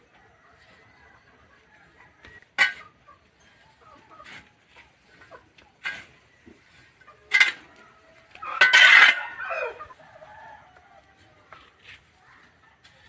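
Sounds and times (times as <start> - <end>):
rooster crowing: 7.9 - 11.3.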